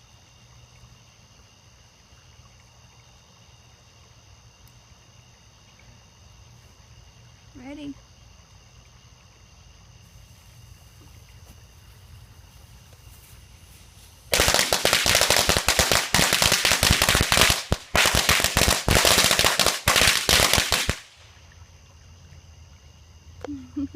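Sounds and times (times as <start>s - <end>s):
firecrackers cracking: 14.3s - 21.2s.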